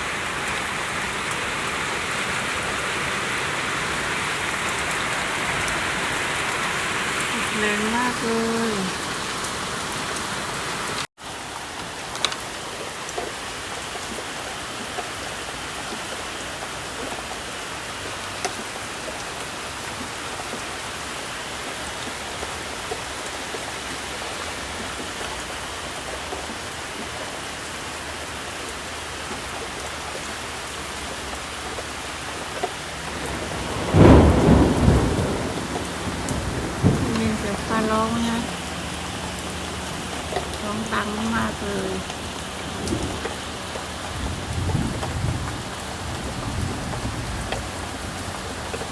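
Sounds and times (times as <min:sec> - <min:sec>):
steady rain falling: 0:00.0 - 0:48.9
thunder rumble: 0:32.8 - 0:48.8.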